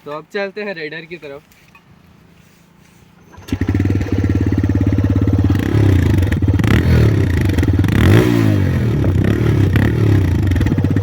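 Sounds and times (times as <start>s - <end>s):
motorcycle engine idling and revving: 3.2s - 11.0s.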